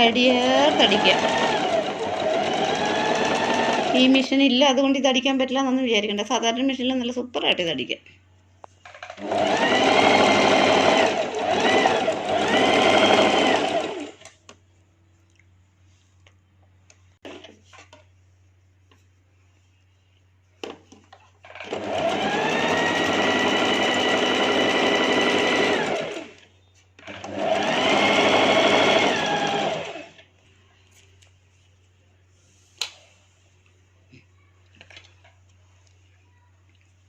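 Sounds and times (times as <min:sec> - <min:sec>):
sewing machine stitching: 0:00.0 - 0:04.2, 0:08.9 - 0:14.4, 0:21.4 - 0:26.4, 0:27.0 - 0:30.2.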